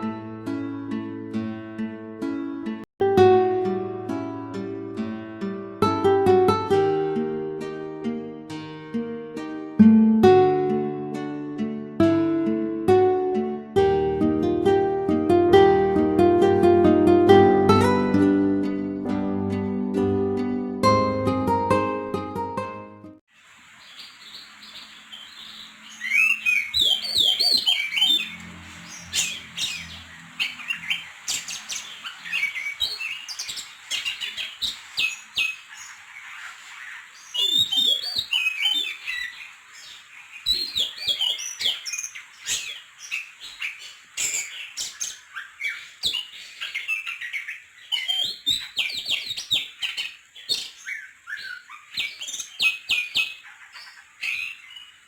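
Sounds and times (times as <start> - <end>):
songbird singing: 2.3 - 21.7, 23.4 - 55.0.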